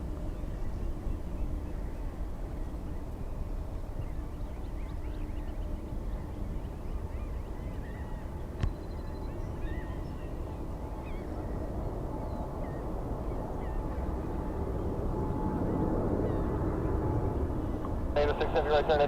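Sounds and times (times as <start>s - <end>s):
bird calls: 0.4s - 14.1s
jet engines rumbling: 8.4s - 19.0s.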